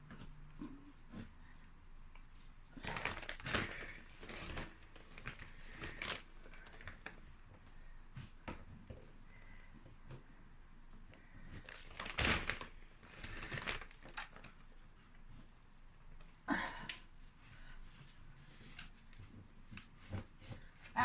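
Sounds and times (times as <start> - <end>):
packaging crinkling and rustling: 2.4 - 7.6, 11.4 - 15.3.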